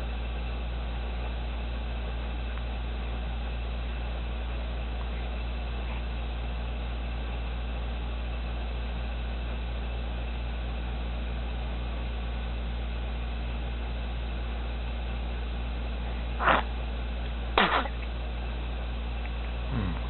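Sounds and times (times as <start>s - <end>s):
electrical hum and hiss: 0.0s - 20.0s
short vocal squeals: 16.4s - 16.8s, 17.6s - 18.0s, 19.7s - 20.0s.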